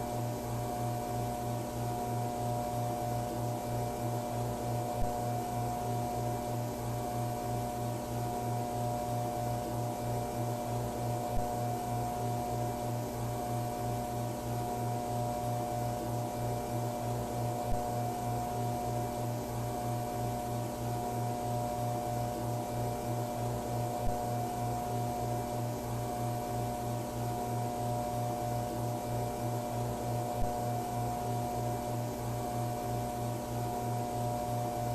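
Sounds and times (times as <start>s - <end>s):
fluorescent lights buzzing: 0.0s - 34.9s.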